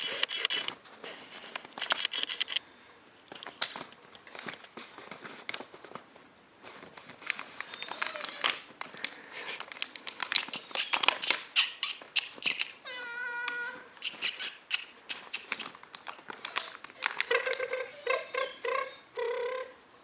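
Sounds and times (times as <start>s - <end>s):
sharp clicks and taps: 9.0s - 12.8s, 13.5s - 17.6s.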